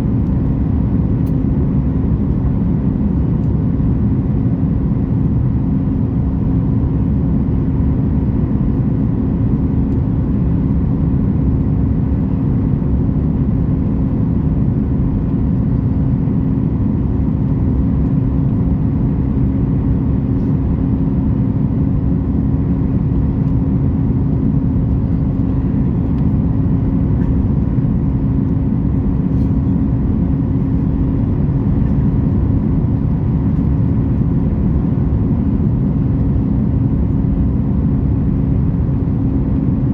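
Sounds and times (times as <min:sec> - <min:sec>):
airplane cabin engine drone: 0:00.0 - 0:39.9
steady low hum: 0:00.0 - 0:39.9.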